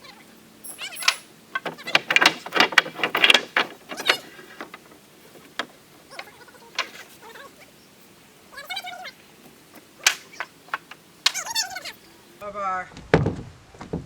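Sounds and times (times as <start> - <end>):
mechanical clicking and clattering: 1.1 - 5.8.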